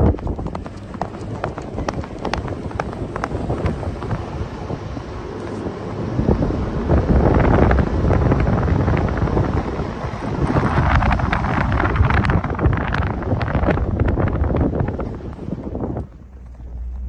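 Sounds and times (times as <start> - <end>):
faint hoof clicks: 0.0 - 4.2
wind buffeting microphone: 0.0 - 17.0.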